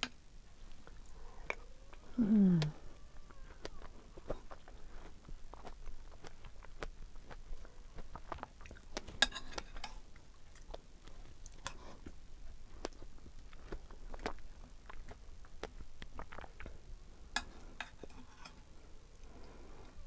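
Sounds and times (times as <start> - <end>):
chewing with wet clicks: 0.1 - 20.0
lip smacks: 0.7 - 6.9.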